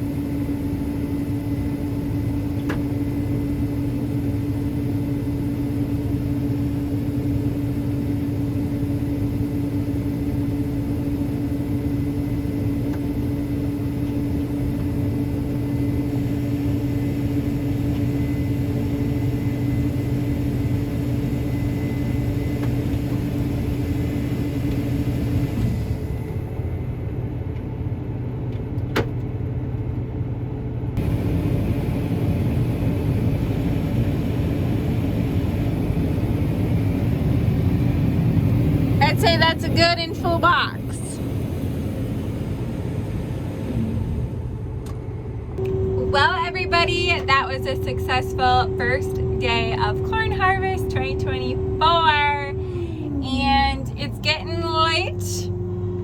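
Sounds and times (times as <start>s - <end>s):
combine harvester humming: 0.0s - 56.0s
steady higher machine tone: 31.0s - 55.5s.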